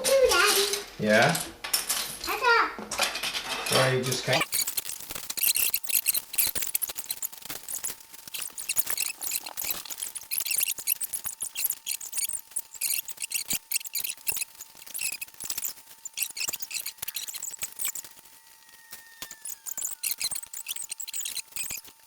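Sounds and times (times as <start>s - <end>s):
plastic bricks clicking and clattering: 4.4s - 18.3s.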